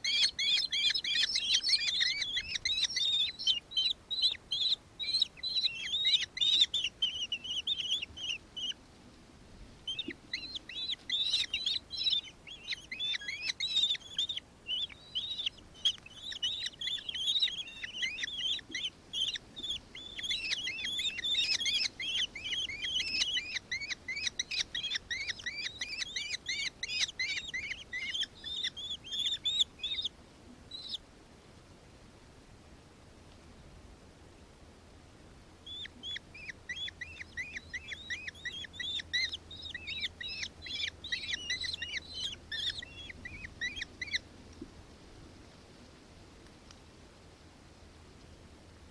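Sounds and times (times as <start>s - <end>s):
kestrel chattering calls: 0.0s - 8.8s, 9.9s - 30.0s, 35.7s - 44.2s.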